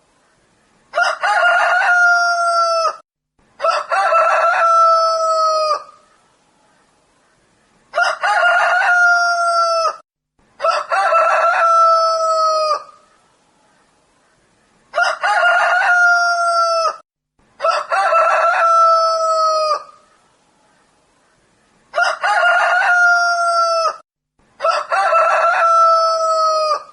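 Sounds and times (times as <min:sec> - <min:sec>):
rooster crowing: 0:00.9 - 0:03.0, 0:03.6 - 0:06.0, 0:07.9 - 0:10.0, 0:10.6 - 0:13.0, 0:14.9 - 0:17.0, 0:17.6 - 0:20.0, 0:21.9 - 0:24.0, 0:24.6 - 0:26.9.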